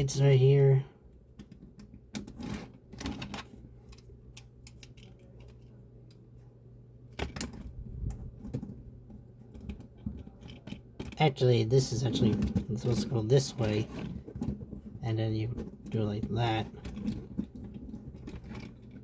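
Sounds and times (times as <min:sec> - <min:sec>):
plastic parts clicking and tapping: 0:01.3 - 0:06.2, 0:07.1 - 0:11.2, 0:12.2 - 0:19.0
plastic parts snapping: 0:03.0 - 0:05.7.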